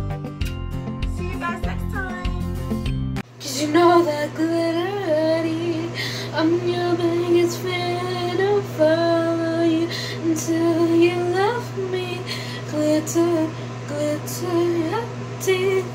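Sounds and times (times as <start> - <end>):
woman singing melody: 3.3 - 15.9.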